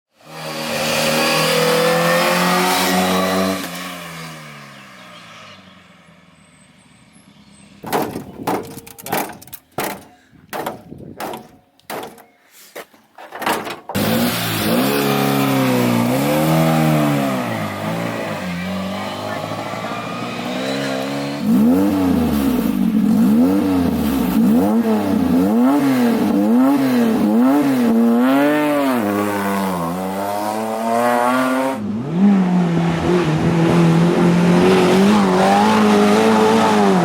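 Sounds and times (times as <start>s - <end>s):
engine revving: 0.2s - 4.6s, 14.0s - 37.0s.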